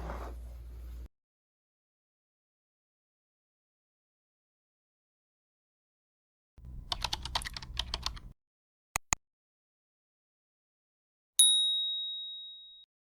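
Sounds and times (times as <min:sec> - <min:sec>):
light typing clicks: 0:06.6 - 0:08.3
sharp clicks: 0:06.6 - 0:08.3, 0:09.0 - 0:09.2
ringing ding: 0:11.4 - 0:12.9.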